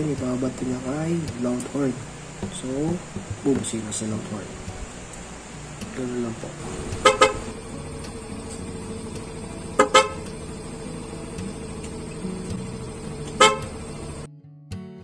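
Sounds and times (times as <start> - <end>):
steady hum: 0.0 - 14.3
guitar music: 0.0 - 15.0
motorcycle horn toots: 6.6 - 8.4, 9.2 - 12.0, 12.9 - 14.2.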